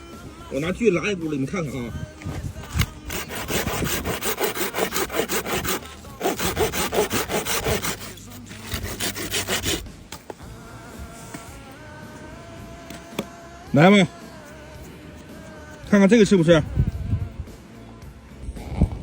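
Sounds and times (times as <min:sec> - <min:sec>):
hand saw cutting wood: 0:02.3 - 0:10.3, 0:12.9 - 0:16.2.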